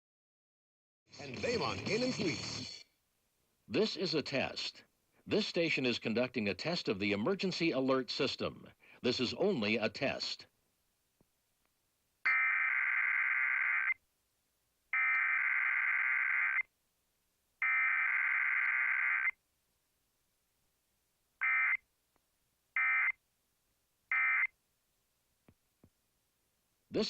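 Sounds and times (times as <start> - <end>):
short digital data bursts: 12.3 - 14.0, 15.0 - 16.6, 17.6 - 19.4.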